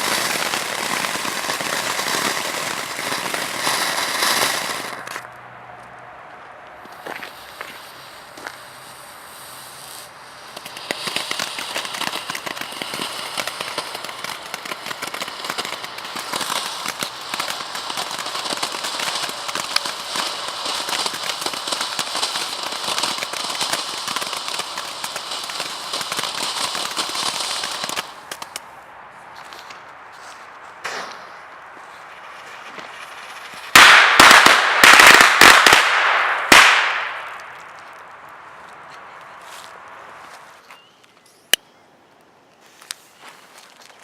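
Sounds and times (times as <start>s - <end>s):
firework crackling and popping: 0.0s - 5.4s, 6.8s - 40.6s.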